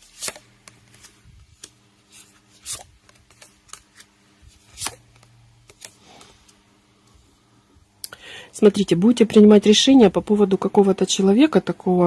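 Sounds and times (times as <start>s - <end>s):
cards flicking and rustling: 0.0s - 6.6s.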